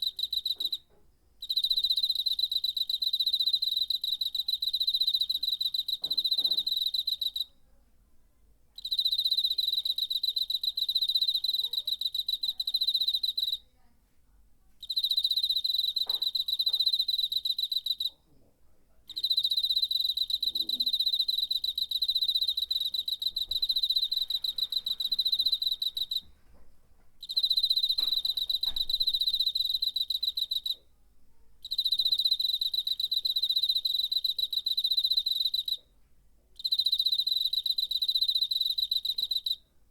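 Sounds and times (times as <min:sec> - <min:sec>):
cricket trilling: 0:14.8 - 0:18.2, 0:19.1 - 0:26.2, 0:27.2 - 0:30.8, 0:31.6 - 0:35.8, 0:36.6 - 0:39.6.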